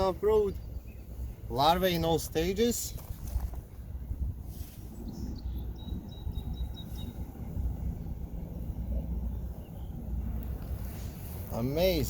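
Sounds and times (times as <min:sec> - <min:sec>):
low rumble: 0:03.5 - 0:11.5.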